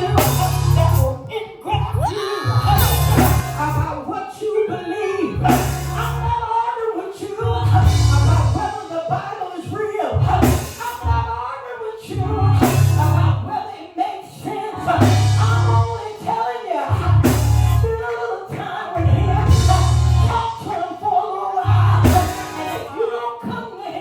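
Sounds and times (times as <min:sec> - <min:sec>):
deep bass notes: 0:00.0 - 0:01.1, 0:01.8 - 0:03.9, 0:05.4 - 0:06.4, 0:07.5 - 0:08.6, 0:10.2 - 0:10.6, 0:12.2 - 0:13.4, 0:14.8 - 0:15.9, 0:16.9 - 0:17.9, 0:19.0 - 0:20.5, 0:21.7 - 0:22.8
music with singing: 0:00.0 - 0:24.0.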